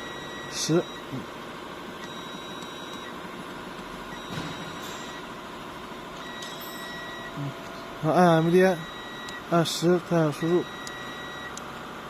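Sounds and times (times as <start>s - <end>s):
workshop machine hum: 0.0s - 12.0s
faint high electronic tone: 6.2s - 11.6s.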